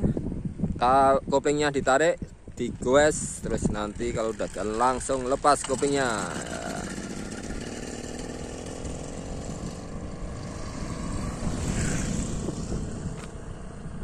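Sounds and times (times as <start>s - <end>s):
two-stroke bicycle engine running: 2.6s - 13.4s.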